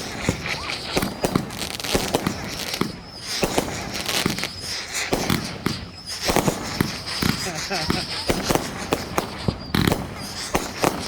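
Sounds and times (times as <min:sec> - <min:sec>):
fireworks bangs and crackling: 0:00.0 - 0:11.0.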